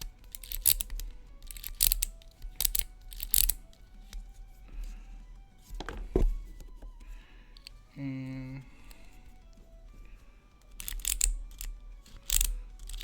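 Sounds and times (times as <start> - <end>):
lock pick scraping clicks: 0.0 - 4.3, 10.6 - 13.0.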